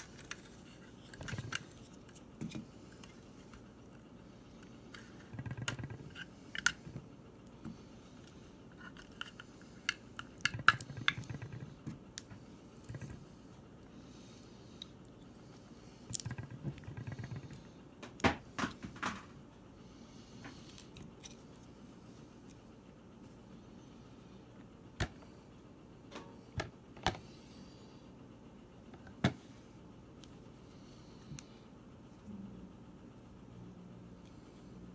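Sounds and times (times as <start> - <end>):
clicks and taps of small objects: 9.2 - 13.2.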